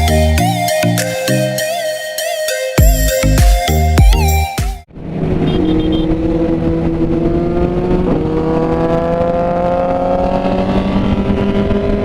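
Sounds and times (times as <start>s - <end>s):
motorcycle engine under throttle: 4.9s - 12.0s.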